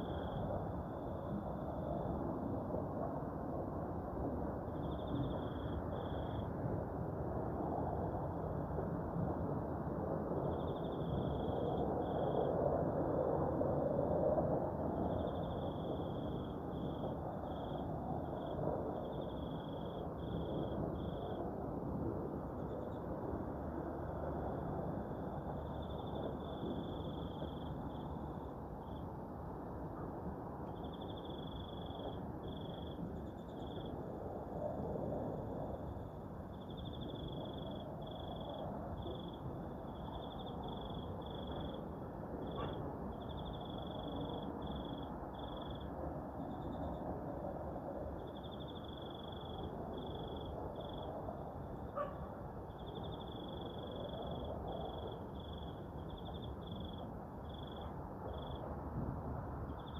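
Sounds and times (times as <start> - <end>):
insects chirping in trills: 0.0 - 2.1, 4.7 - 6.4, 15.0 - 21.4, 24.2 - 29.1, 30.7 - 34.2, 35.3 - 47.0, 48.1 - 58.7, 59.7 - 59.9.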